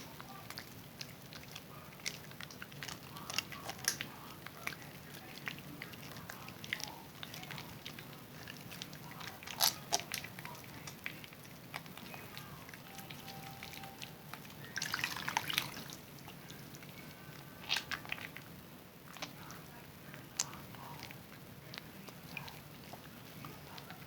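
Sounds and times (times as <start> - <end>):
soap lathering wet squishing: 0.0 - 24.0
water dripping: 12.9 - 16.4.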